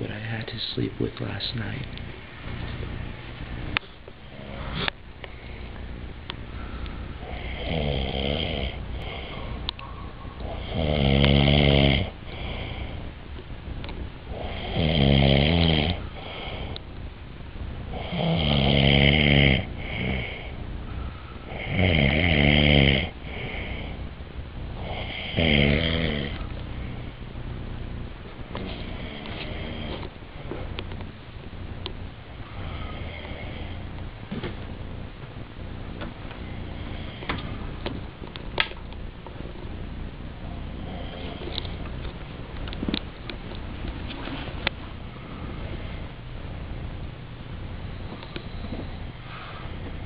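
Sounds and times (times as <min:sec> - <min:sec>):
steady low rumble: 0:00.0 - 0:50.0
man breathing quietly: 0:03.8 - 0:07.7, 0:08.6 - 0:09.8, 0:12.1 - 0:14.8, 0:16.0 - 0:17.0, 0:19.6 - 0:21.8, 0:23.1 - 0:25.4, 0:32.3 - 0:34.2, 0:36.3 - 0:37.9, 0:40.4 - 0:42.0, 0:44.3 - 0:46.7, 0:48.0 - 0:50.0
person snoring loudly: 0:07.2 - 0:09.6, 0:10.4 - 0:13.1, 0:14.3 - 0:16.8, 0:17.9 - 0:20.6, 0:21.4 - 0:24.0, 0:24.8 - 0:27.1, 0:28.6 - 0:30.0, 0:32.4 - 0:33.8.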